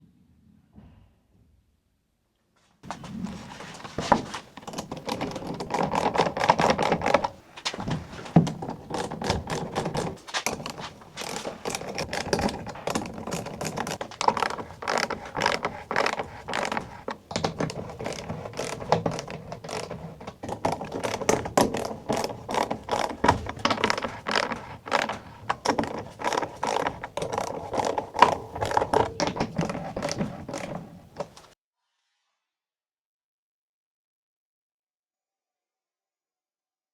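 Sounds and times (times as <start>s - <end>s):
ratchet clicking and knocking: 4.0s - 31.5s.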